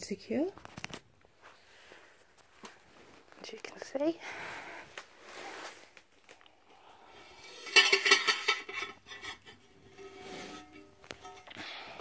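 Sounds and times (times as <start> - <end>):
metal parts clinking and scraping: 7.3 - 11.6.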